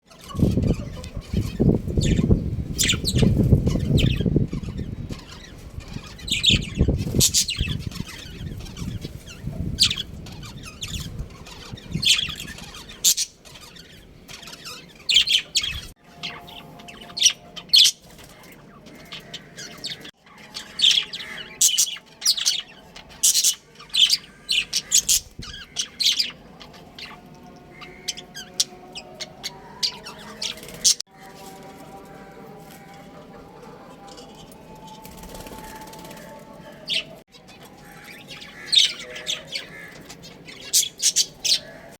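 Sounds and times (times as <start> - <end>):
budgerigars chirping: 0.1 - 31.0, 36.9 - 41.9.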